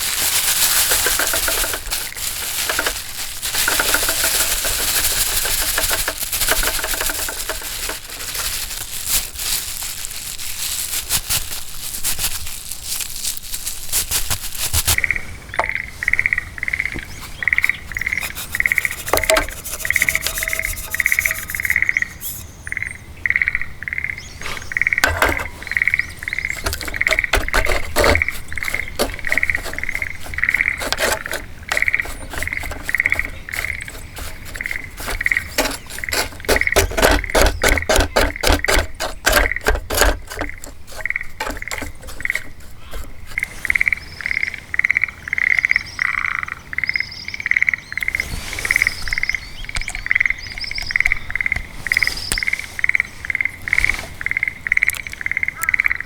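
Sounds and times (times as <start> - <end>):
campfire crackling: 0.0 - 22.4
animal chirping: 19.8 - 36.7.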